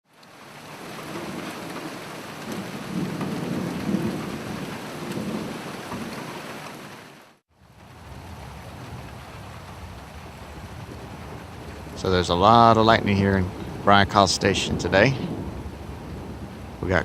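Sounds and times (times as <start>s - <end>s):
steady rain: 0.0s - 17.0s
rolling thunder: 2.4s - 6.2s, 7.6s - 17.0s.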